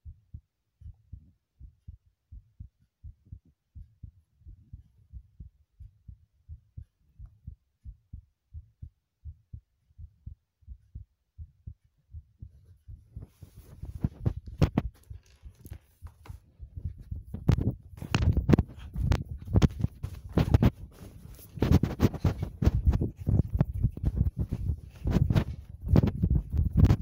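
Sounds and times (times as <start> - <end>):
heartbeat thumps: 0.0 - 27.0.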